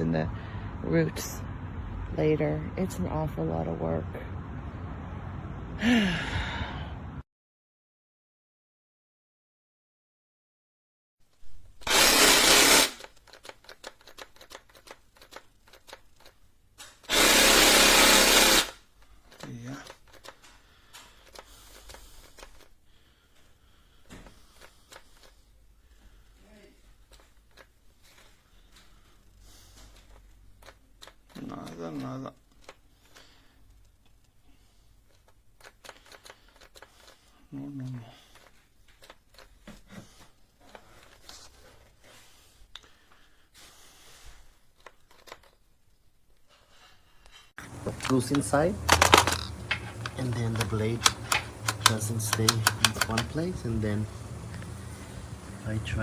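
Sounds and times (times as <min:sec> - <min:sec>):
faint clicks and rustles of handling: 0:13.0 - 0:17.1, 0:18.9 - 0:56.0
light handling rustle: 0:46.5 - 0:56.0
faint handling clicks: 0:47.6 - 0:55.3.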